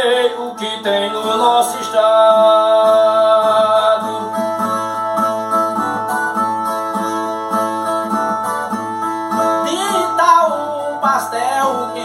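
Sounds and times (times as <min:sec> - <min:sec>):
person singing: 0:00.0 - 0:05.7, 0:09.4 - 0:12.0
steel-strung guitar strumming chords: 0:00.0 - 0:12.0.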